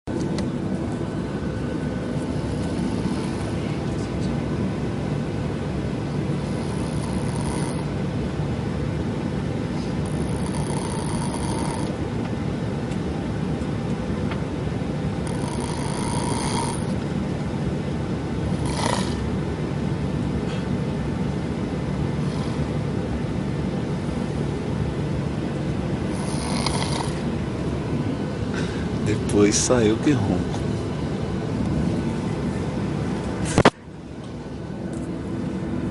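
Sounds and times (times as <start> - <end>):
airplane cabin drone: 0.0 - 35.9
person snoring: 2.2 - 3.8, 6.4 - 7.9, 10.0 - 11.9, 15.2 - 17.0, 18.6 - 19.3, 22.2 - 22.7, 26.1 - 27.2.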